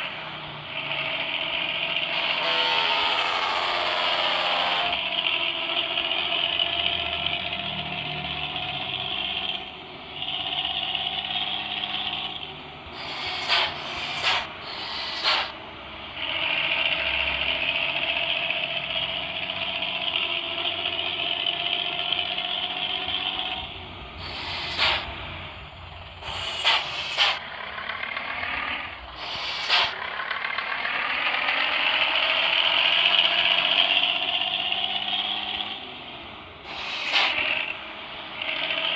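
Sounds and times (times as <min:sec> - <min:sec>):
bus engine and growling exhaust: 0:00.0 - 0:38.9
sharp air hisses: 0:12.9 - 0:15.6, 0:24.2 - 0:25.4, 0:26.2 - 0:27.4, 0:29.1 - 0:30.0, 0:36.7 - 0:37.5.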